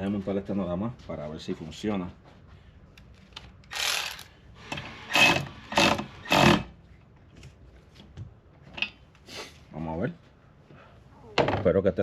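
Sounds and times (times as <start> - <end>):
power tool bursts: 3.7 - 6.7.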